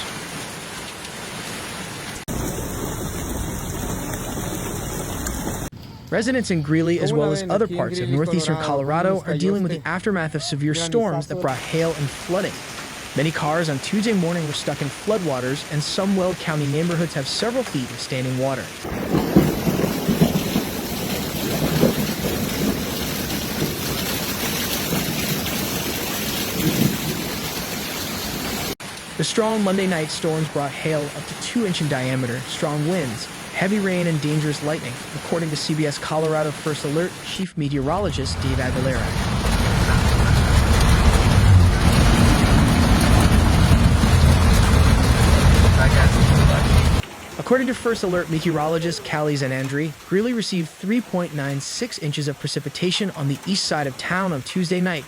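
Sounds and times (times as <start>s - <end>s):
rainstorm rushing: 0.0s - 55.0s
low rumbles of thunder: 2.3s - 5.7s, 18.8s - 27.5s, 37.8s - 47.0s.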